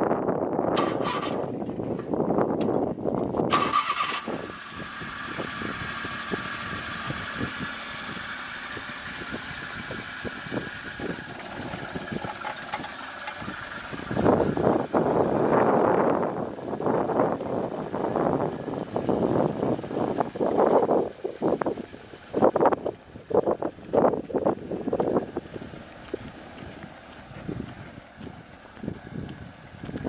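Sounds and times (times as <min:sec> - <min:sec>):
car engine cranking on starter: 0:00.7 - 0:23.4.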